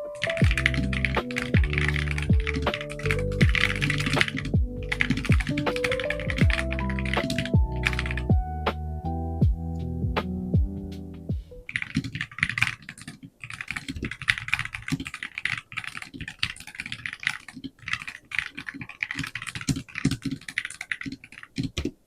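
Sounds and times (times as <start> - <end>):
music with falling notes: 0.0 - 11.7
keyboard key clacks: 0.2 - 8.3.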